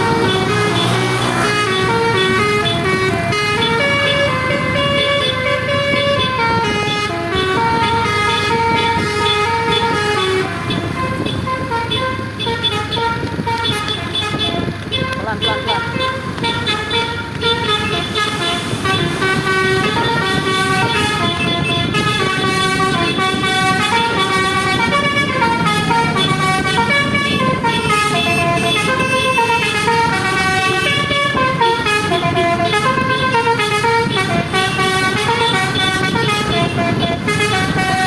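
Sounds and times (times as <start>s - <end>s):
bus horn playing a melody: 0.0s - 38.0s.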